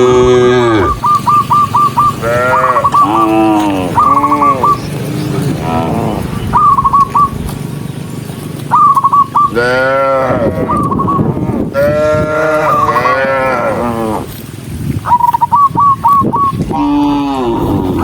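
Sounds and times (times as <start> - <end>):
cattle mooing: 0.0 - 1.0, 1.9 - 6.4, 9.5 - 14.4, 16.7 - 18.0
short high chirping calls: 0.8 - 5.0, 6.4 - 9.6, 10.7 - 11.3, 15.0 - 16.7.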